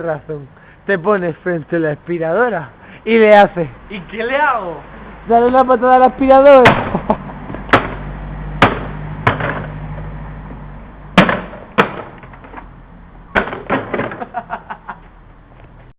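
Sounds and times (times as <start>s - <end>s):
low motor hum: 4.8s - 13.4s
vacuum cleaner being kicked: 8.6s - 9.7s, 13.3s - 14.3s.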